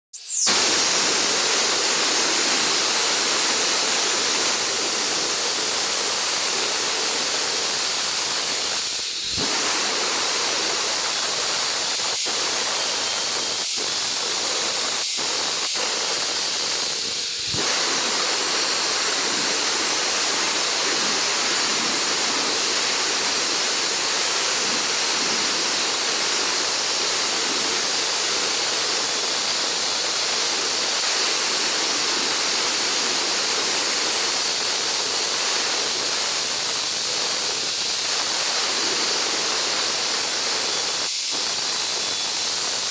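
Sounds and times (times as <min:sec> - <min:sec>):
concrete saw cutting concrete: 0:00.5 - 0:42.9.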